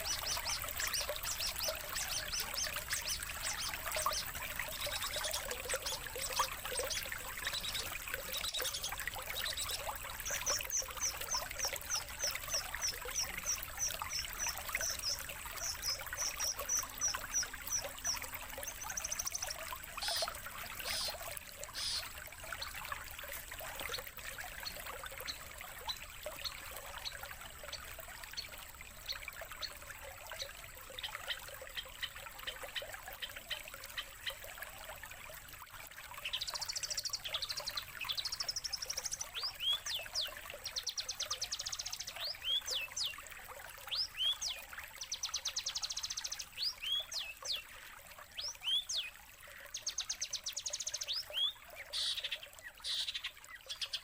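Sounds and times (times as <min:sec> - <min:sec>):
songbird high chirps: 0:00.0 - 0:19.4, 0:20.0 - 0:22.1, 0:36.2 - 0:43.1, 0:43.9 - 0:47.7, 0:48.4 - 0:54.0
trickle of running water: 0:00.0 - 0:54.0.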